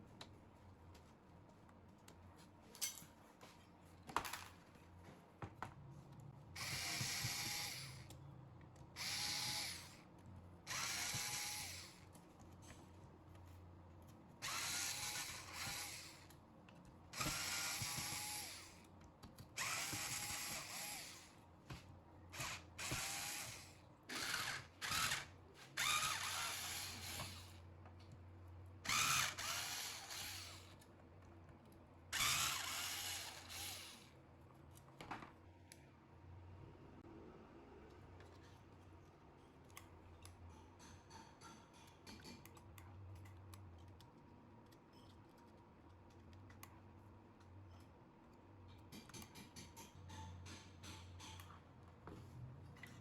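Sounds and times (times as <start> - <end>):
electric drill bursts: 6.6 - 8.0, 9.0 - 10.0, 10.7 - 12.0, 14.4 - 16.3, 17.2 - 18.8, 19.6 - 21.3, 22.4 - 27.6, 28.9 - 30.7, 32.2 - 34.1.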